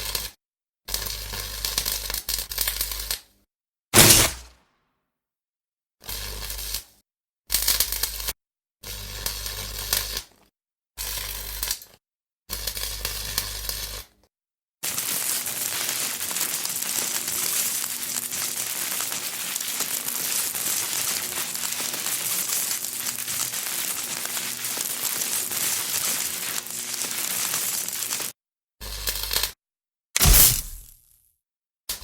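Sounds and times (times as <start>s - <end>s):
electric sparking crackle: 4.0s - 4.5s, 14.8s - 28.4s, 30.2s - 31.0s.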